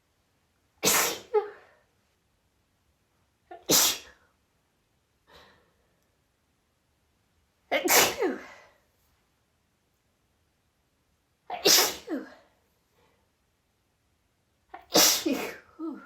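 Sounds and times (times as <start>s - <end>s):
woman sneezing: 0.8s - 1.7s, 3.6s - 4.2s, 7.7s - 8.6s, 11.5s - 12.4s, 14.8s - 16.0s.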